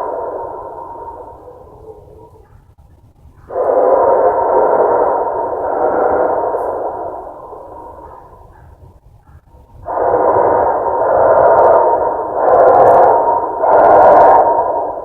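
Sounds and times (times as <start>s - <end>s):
loud droning noise from sky: 3.4s - 8.8s, 9.8s - 15.0s.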